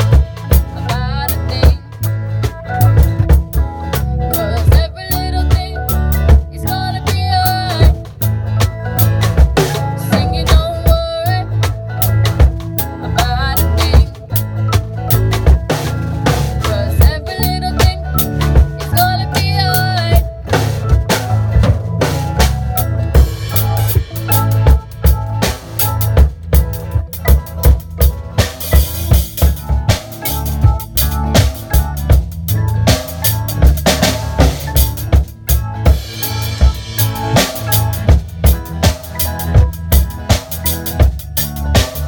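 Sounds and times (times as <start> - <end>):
bass line: 0.0 - 42.0
drum kit steady beat: 0.0 - 42.0
live band playing reggae pop: 0.0 - 42.0.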